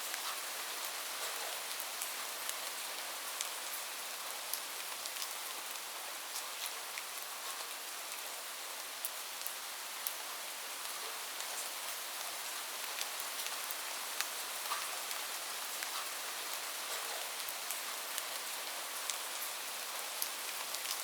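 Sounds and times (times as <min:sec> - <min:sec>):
steady rain hiss: 0:00.0 - 0:21.0
raindrops ticking on a surface: 0:00.1 - 0:21.0.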